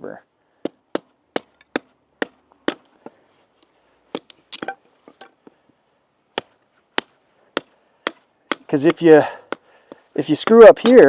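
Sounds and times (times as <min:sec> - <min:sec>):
hatchet chopping wood: 0:00.6 - 0:03.2, 0:04.1 - 0:05.5, 0:06.3 - 0:11.0.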